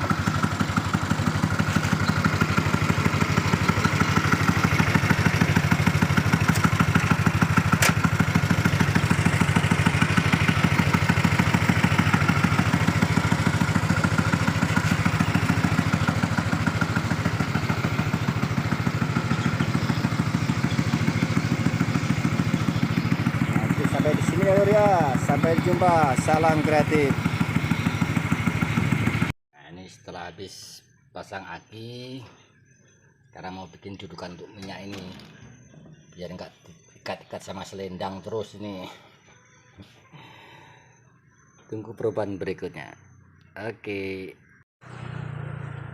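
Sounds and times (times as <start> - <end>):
motorcycle engine idling: 0.0 - 29.4, 32.5 - 42.4, 43.0 - 45.9.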